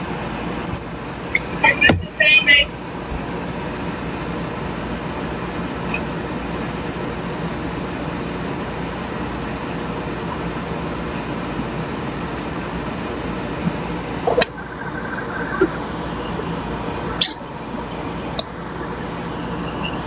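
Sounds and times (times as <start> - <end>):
faint low hum: 12.6 - 20.0
steady whooshing noise: 13.0 - 19.1.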